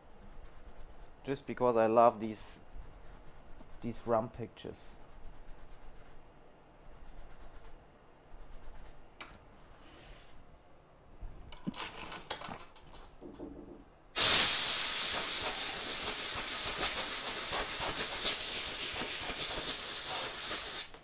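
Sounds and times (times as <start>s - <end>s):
air blowing hiss: 14.2s - 21.0s.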